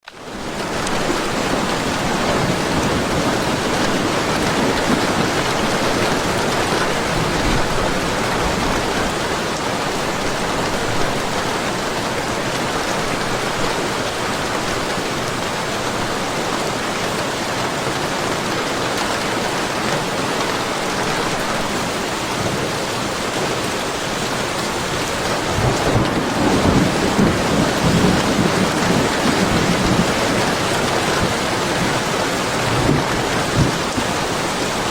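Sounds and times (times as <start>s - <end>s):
heavy rain falling: 0.0s - 34.9s
low rumble of thunder: 25.4s - 34.9s.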